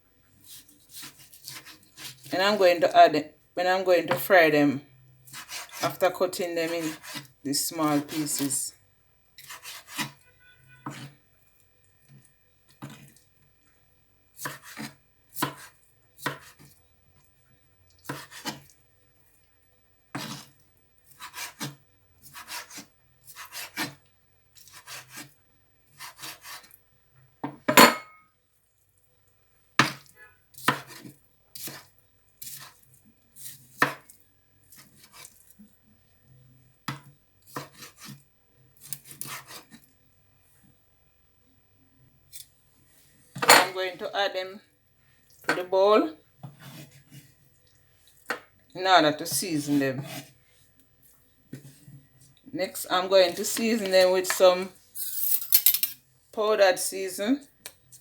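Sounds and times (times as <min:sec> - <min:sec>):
knife chopping on cutting board: 0:00.5 - 0:02.3, 0:05.3 - 0:05.9, 0:06.8 - 0:07.3, 0:09.4 - 0:10.2, 0:10.8 - 0:11.1, 0:14.4 - 0:16.7, 0:18.1 - 0:18.6, 0:20.2 - 0:20.4, 0:21.2 - 0:24.0, 0:24.6 - 0:25.3, 0:30.6 - 0:31.8, 0:33.4 - 0:34.0, 0:36.9 - 0:38.2, 0:38.8 - 0:39.7, 0:49.7 - 0:50.3.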